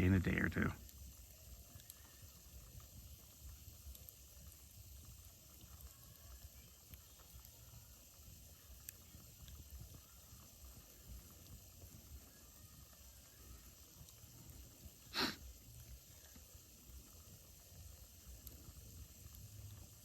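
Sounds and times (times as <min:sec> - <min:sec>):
faint clicks: 0:00.8 - 0:15.0.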